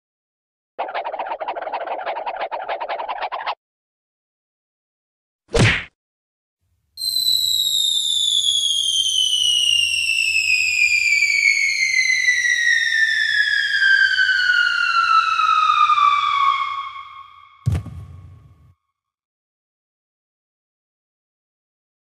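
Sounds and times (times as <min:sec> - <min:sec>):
falling whistle sound effect: 0:07.0 - 0:18.7.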